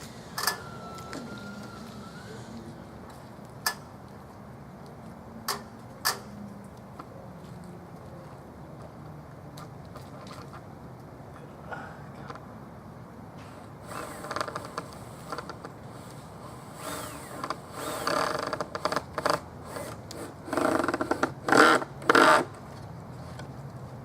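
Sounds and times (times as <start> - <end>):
power drill driving screws: 0.0 - 2.6, 13.8 - 15.5, 16.8 - 22.4.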